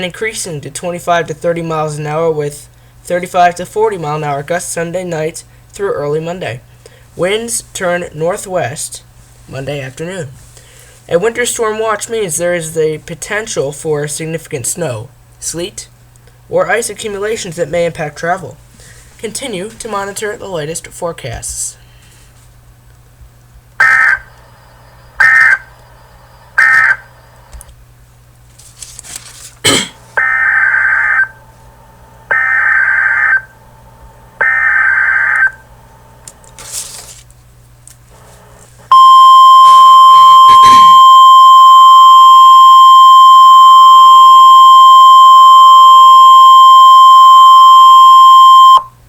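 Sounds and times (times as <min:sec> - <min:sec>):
loud steady alert tone: 0:23.8 - 0:27.5, 0:30.2 - 0:36.2, 0:38.9 - 0:48.8
click: 0:27.4 - 0:27.8, 0:36.2 - 0:36.6
data bursts: 0:38.9 - 0:48.8.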